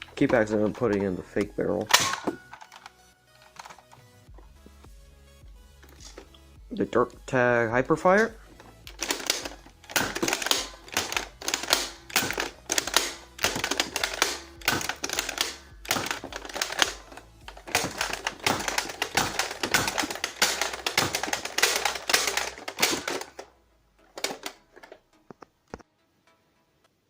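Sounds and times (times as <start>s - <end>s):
toy blaster clacks and snaps: 0.0s - 3.9s, 8.8s - 23.5s, 24.1s - 25.0s.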